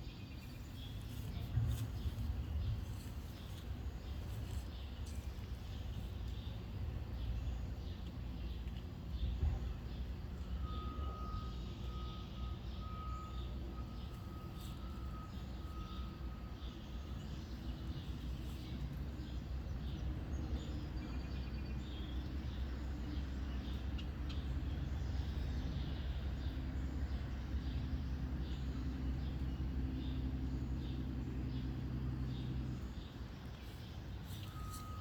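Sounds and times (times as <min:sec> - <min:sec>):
birds chirping: 0:00.0 - 0:27.8, 0:28.4 - 0:35.0
heavy vehicle engine rumbling: 0:00.0 - 0:35.0
reversing alarm beeping: 0:10.3 - 0:18.0, 0:34.4 - 0:35.0.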